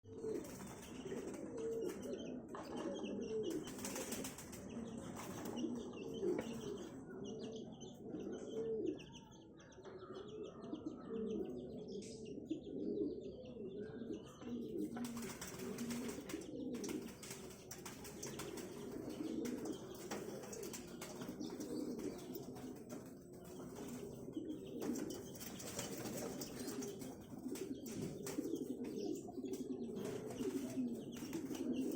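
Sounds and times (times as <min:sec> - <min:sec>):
pigeons cooing: 0:00.1 - 0:31.9
wing flapping: 0:15.0 - 0:22.7.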